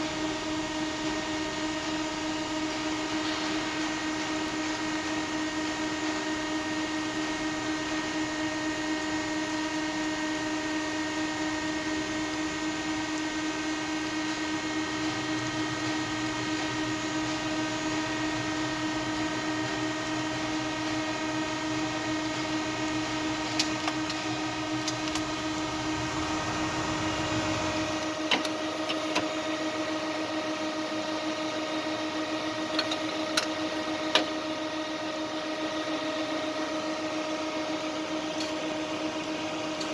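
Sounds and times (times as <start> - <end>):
machine whine: 0.0 - 39.9
low machine rumble: 22.4 - 28.8.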